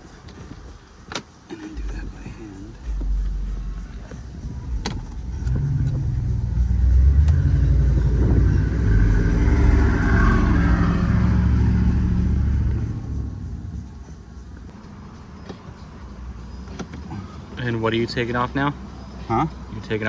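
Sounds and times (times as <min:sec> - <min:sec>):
vehicle engine rumble driving past: 0:01.6 - 0:15.4.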